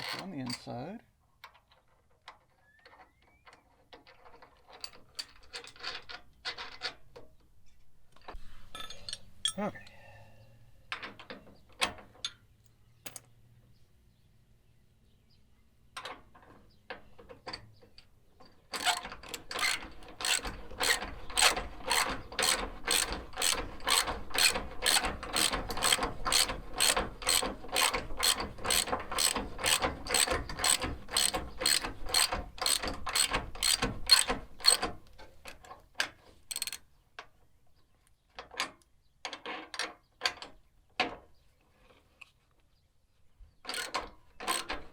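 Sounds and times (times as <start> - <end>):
hand ratchet clicking: 18.8 - 34.9, 36.5 - 36.8, 43.7 - 44.9.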